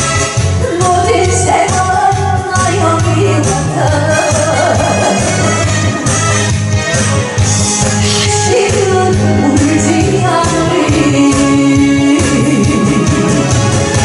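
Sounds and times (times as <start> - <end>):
musical accompaniment: 0.0 - 14.0
person singing: 0.6 - 6.4, 7.0 - 14.0.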